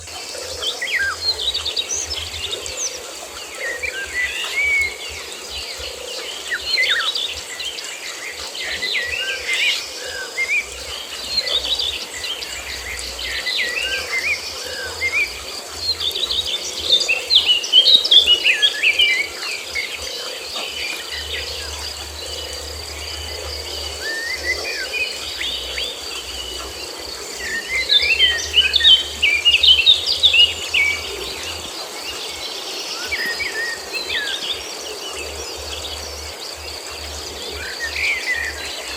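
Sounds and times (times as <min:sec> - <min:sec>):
birds chirping and twittering: 0:00.0 - 0:38.9
high insect drone: 0:00.0 - 0:38.9.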